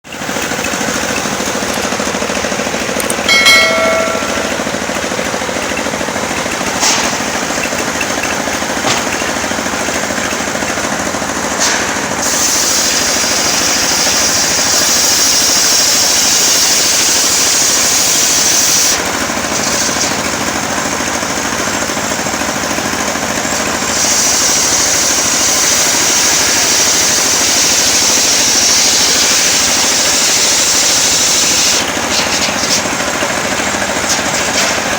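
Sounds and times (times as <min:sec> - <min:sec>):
sawmill engine running: 0:00.0 - 0:34.9
sharp clicks: 0:03.0 - 0:03.3
ringing squeal: 0:03.3 - 0:05.0.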